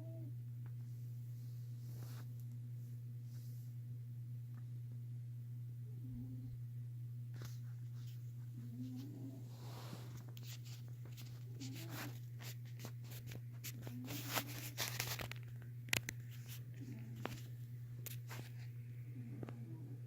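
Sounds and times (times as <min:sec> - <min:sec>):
steady low hum: 0:00.0 - 0:20.0
clicks and crackles: 0:10.2 - 0:18.7.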